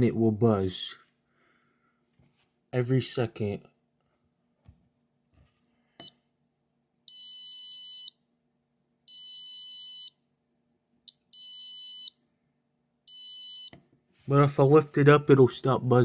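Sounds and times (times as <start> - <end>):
high-pitched buzzer beeps: 7.1 - 8.2, 9.1 - 10.2, 13.1 - 13.7.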